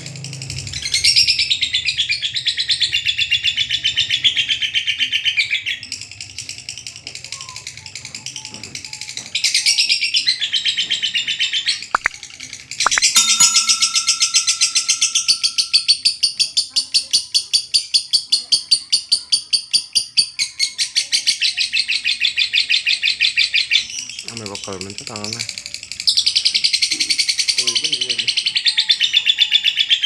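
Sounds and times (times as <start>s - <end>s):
lovebird chattering: 11.4s - 12.2s, 12.8s - 20.2s
sharp clicks: 12.0s - 12.2s, 12.9s - 13.2s.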